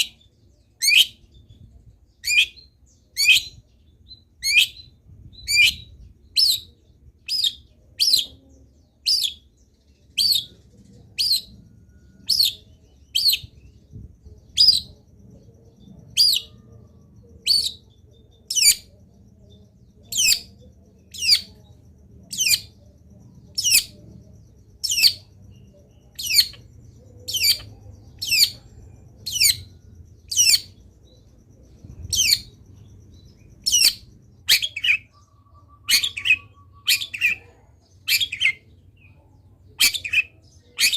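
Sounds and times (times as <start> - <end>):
shrike calling: 20.0 - 38.7.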